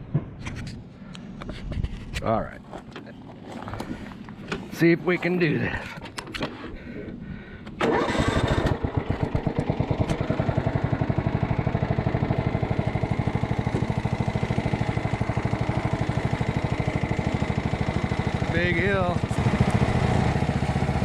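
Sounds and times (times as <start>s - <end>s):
riding lawn mower engine: 7.7s - 21.0s.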